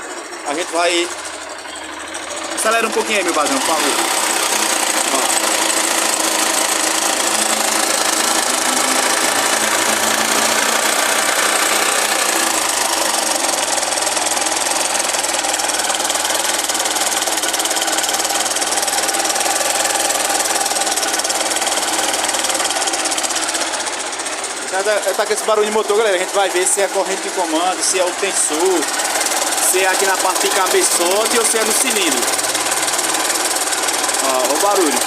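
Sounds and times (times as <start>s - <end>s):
motorcycle engine clattering: 0.0s - 35.0s.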